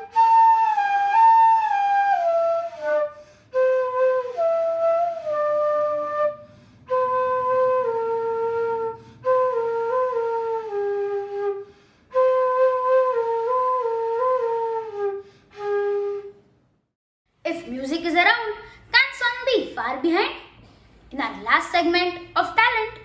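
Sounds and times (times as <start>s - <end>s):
flute solo melody: 0.0s - 16.4s.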